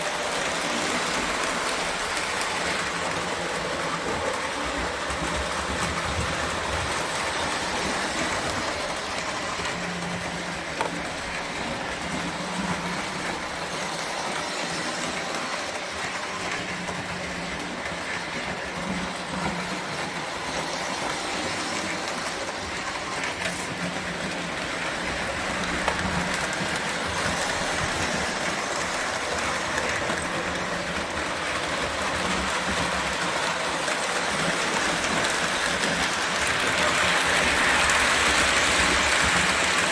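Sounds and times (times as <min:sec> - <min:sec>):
toy train rolling on track: 0:00.0 - 0:39.9.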